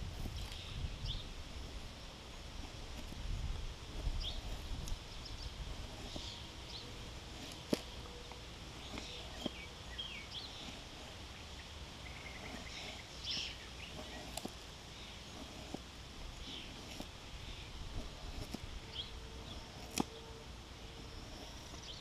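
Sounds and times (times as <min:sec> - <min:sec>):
small birds chirping: 0:00.0 - 0:22.0
knife cutting into wood: 0:12.4 - 0:14.7, 0:15.3 - 0:17.1, 0:18.0 - 0:18.7, 0:19.4 - 0:20.2.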